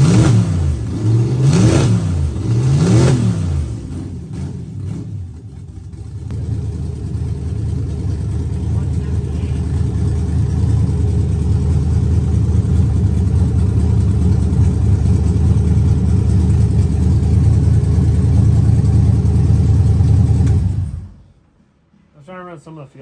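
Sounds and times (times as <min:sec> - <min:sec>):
truck engine droning: 0:00.0 - 0:21.4.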